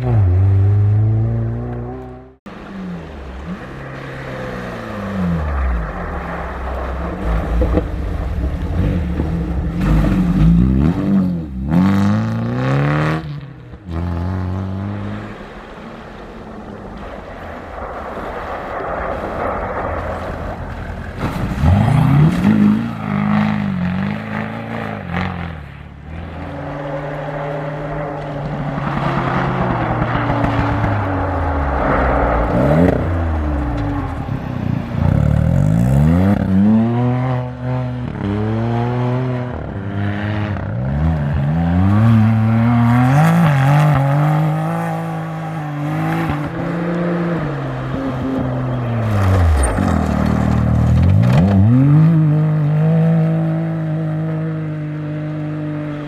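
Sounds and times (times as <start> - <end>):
rushing noise of vehicles moving: 0.0 - 56.0
vehicle engines revving past: 18.5 - 56.0.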